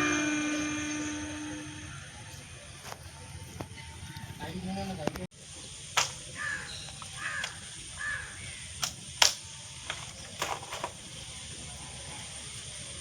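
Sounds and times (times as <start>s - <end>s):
sharp clicks or knocks: 6.0s - 6.3s, 8.8s - 11.0s
crow cawing: 6.0s - 8.8s.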